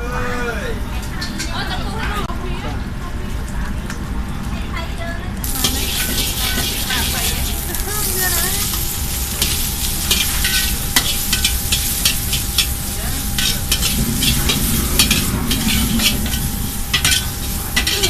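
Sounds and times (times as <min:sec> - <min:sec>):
food sizzling in a pan: 0:05.4 - 0:18.0.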